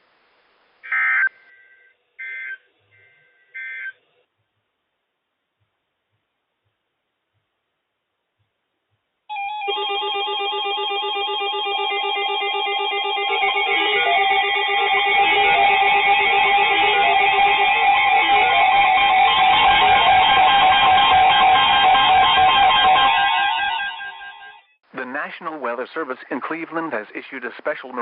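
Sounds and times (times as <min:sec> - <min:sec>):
warbling two-tone alert: 0:09.3 - 0:24.6
overlapping alarm beeping: 0:09.3 - 0:24.7.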